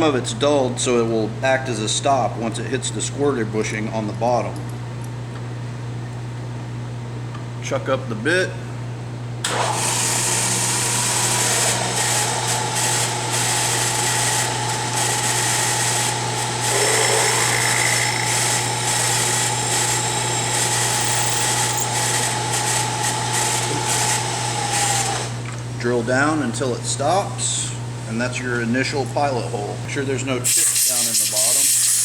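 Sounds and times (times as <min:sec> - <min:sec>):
power drill whining: 0:09.5 - 0:25.4.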